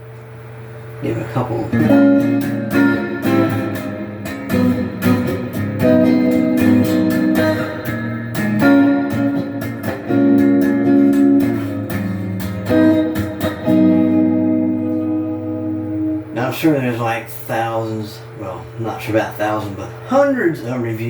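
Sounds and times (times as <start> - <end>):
clean electric guitar chords: 1.2 - 16.5.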